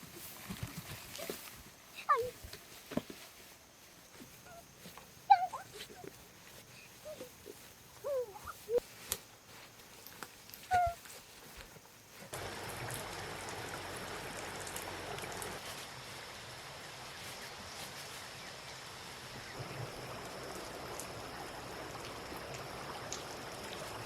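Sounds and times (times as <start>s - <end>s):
water hissing: 12.4s - 16.0s.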